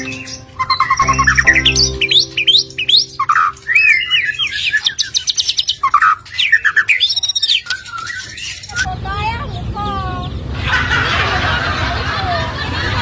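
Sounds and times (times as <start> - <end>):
small birds chirping and whistling: 0.0 - 8.9.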